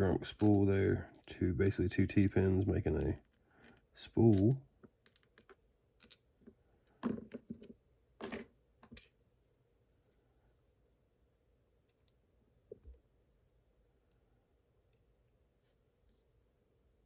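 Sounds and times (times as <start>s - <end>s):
small lock parts clicking: 3.7s - 6.3s.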